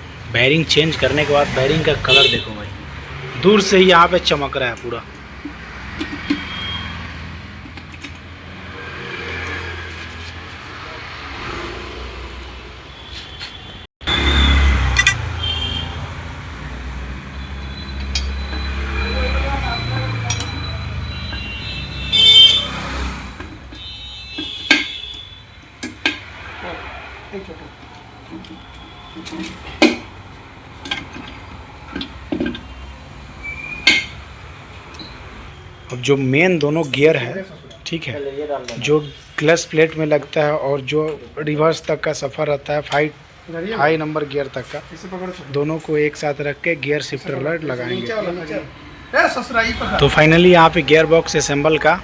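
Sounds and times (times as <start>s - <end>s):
motor vehicle rumble: 25.7s - 35.5s.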